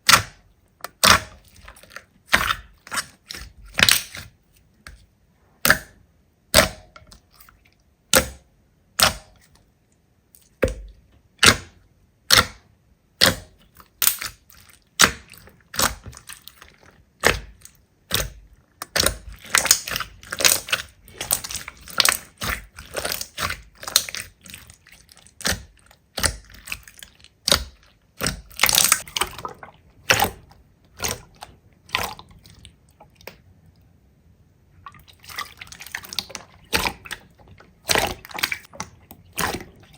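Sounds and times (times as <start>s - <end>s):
slime squeezed popping and clicking: 13.2s - 14.4s.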